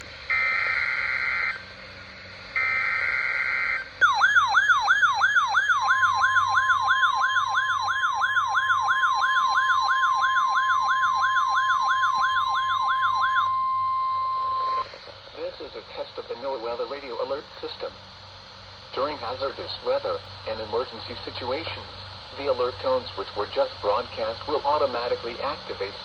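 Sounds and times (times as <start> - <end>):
harsh buzzing data tones: 2.5 - 15.0
steady warning tone: 2.5 - 18.0
warbling alarm sweeps: 2.6 - 14.9.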